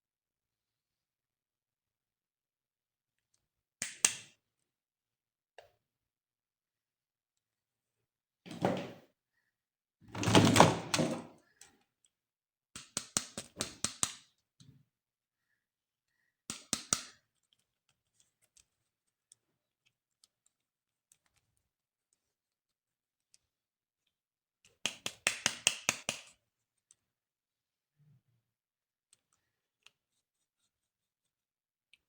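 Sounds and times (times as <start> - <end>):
sharp plastic clicks: 12.8 - 14.3.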